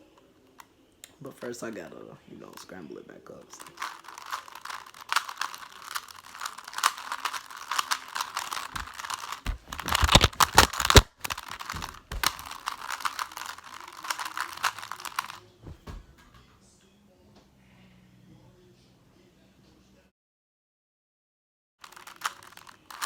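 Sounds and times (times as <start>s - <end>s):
puzzle cube plastic clicking: 3.6s - 15.4s, 21.8s - 23.0s.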